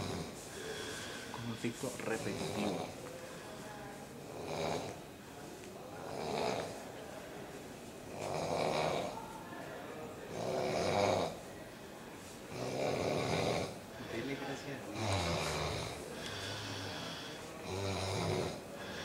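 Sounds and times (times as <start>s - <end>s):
person snoring: 2.2s - 3.0s, 6.0s - 6.7s, 8.1s - 9.2s, 10.3s - 11.4s, 12.5s - 13.8s, 14.9s - 19.0s.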